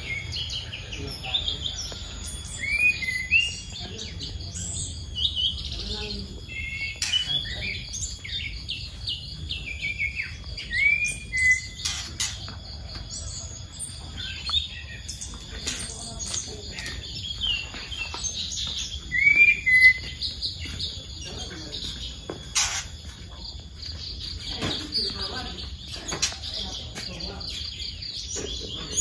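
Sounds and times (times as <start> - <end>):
songbirds singing: 0.0 - 29.0.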